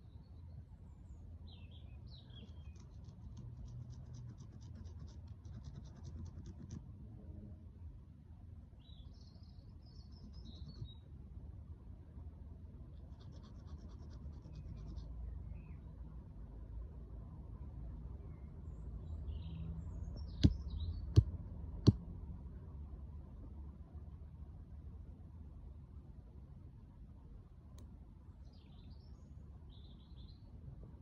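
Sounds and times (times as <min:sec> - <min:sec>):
rapid dry bird trill: 0:10.1 - 0:11.0, 0:13.0 - 0:15.1.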